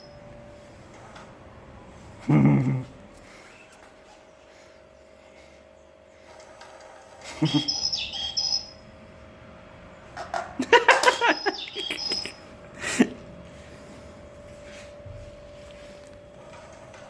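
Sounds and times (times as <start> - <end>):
steady low hum: 0.0 - 17.0
bird chirping and calling: 7.3 - 8.8, 10.8 - 12.5.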